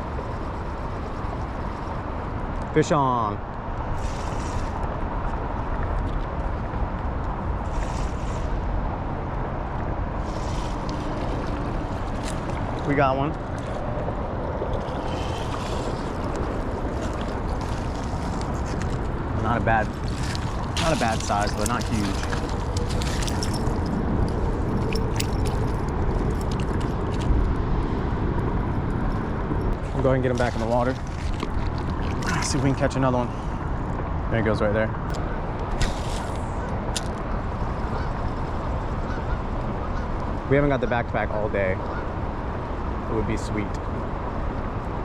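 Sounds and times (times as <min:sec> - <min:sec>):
wind rumbling on microphone: 0:00.0 - 0:45.0
river water rushing: 0:10.2 - 0:26.4.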